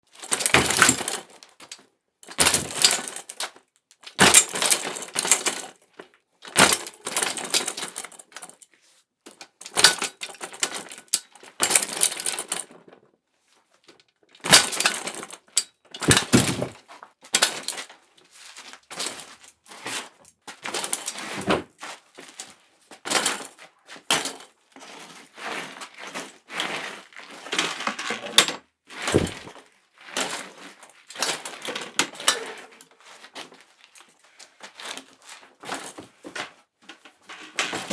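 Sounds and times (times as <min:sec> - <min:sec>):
bicycle clattering to ground: 0:00.2 - 0:01.4, 0:02.3 - 0:03.5, 0:04.1 - 0:05.7, 0:14.4 - 0:16.8, 0:27.5 - 0:29.6.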